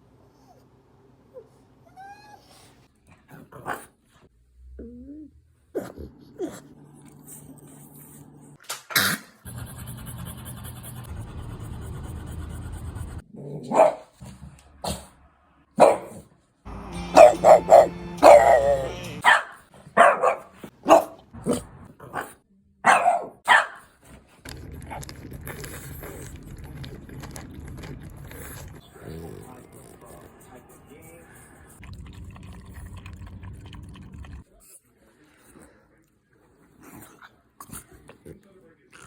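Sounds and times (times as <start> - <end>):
dog barking: 13.6 - 14.2, 15.8 - 16.3, 16.9 - 23.9.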